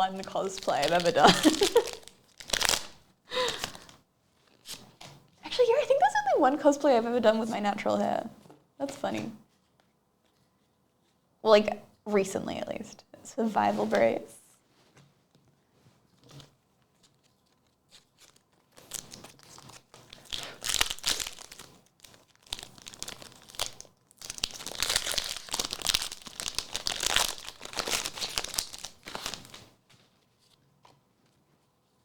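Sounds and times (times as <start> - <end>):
foil wrappers tearing and crinkling: 0.0 - 4.0, 17.0 - 29.7.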